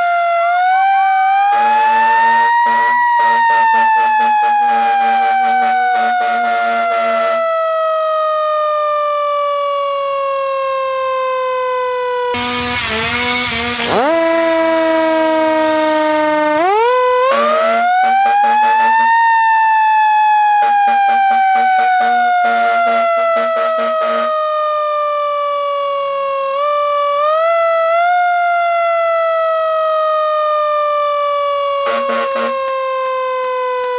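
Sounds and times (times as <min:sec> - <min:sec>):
siren wailing: 0:00.0 - 0:33.9
held horn-like tones: 0:01.4 - 0:07.7, 0:12.3 - 0:19.3, 0:20.5 - 0:24.5, 0:31.8 - 0:32.9.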